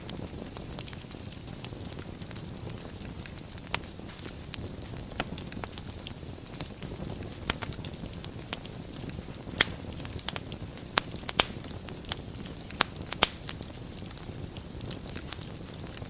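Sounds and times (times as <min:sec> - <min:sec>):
fire crackling and popping: 0:00.0 - 0:16.0
fire rumbling: 0:00.0 - 0:16.0.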